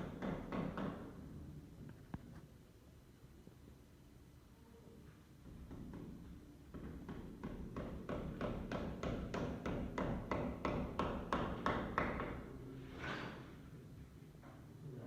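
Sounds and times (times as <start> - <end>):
scraping sound: 12.8 - 13.6.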